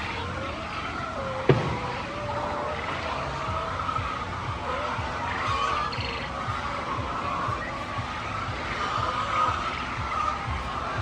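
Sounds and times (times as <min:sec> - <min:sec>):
chickens calling: 0:00.0 - 0:11.0
low soft thuds: 0:01.4 - 0:02.1.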